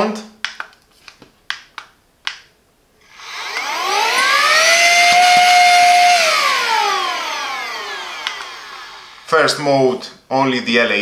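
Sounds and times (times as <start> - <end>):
handheld vacuum motor whine: 3.1 - 9.3.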